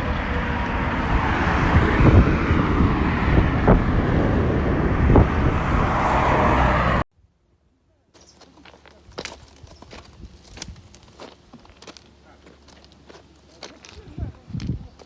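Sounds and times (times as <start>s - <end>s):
wind buffeting microphone: 0.0s - 7.0s, 14.0s - 15.0s.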